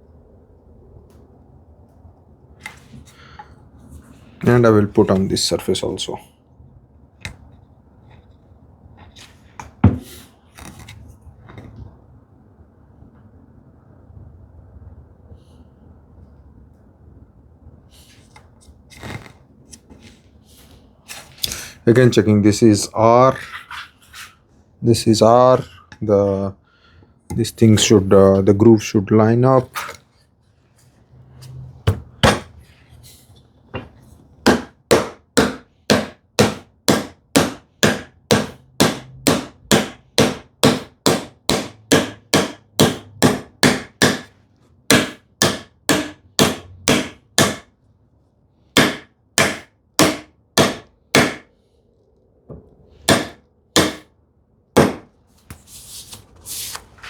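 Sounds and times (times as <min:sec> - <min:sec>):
hammer tapping on wood: 0:34.5 - 0:44.3, 0:44.9 - 0:47.6, 0:48.8 - 0:51.4, 0:53.1 - 0:54.0.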